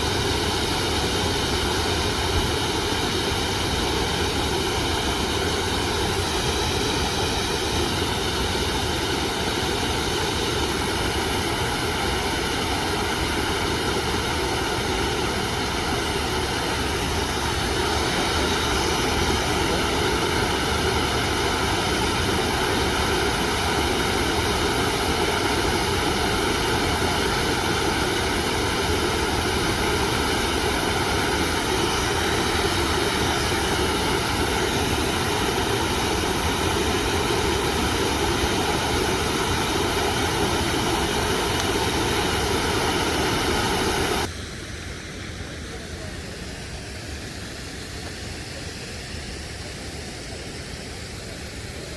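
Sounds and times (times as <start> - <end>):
waterfall rushing: 0.0 - 44.3.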